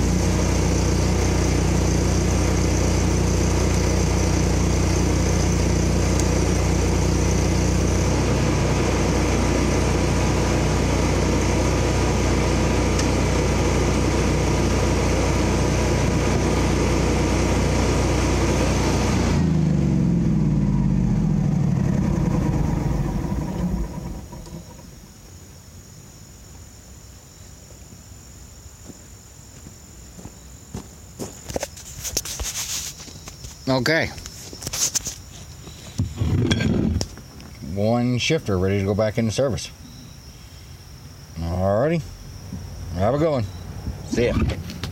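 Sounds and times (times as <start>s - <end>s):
engine idling and spinning down: 0.0s - 25.3s, 42.6s - 44.9s.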